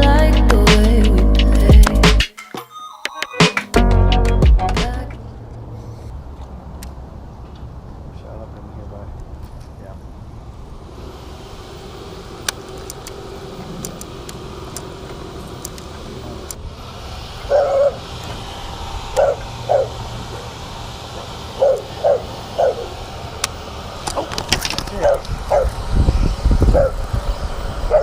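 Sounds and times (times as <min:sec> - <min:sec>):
low rumble of traffic: 0:04.0 - 0:28.0
dog barking: 0:17.5 - 0:18.0, 0:19.2 - 0:20.0, 0:21.6 - 0:22.9, 0:25.0 - 0:25.8, 0:26.7 - 0:27.0.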